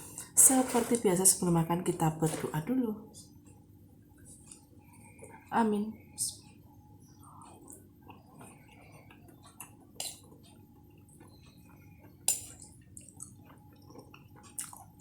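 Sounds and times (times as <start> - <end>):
cutlery clinking against dishes: 12.3 - 12.7.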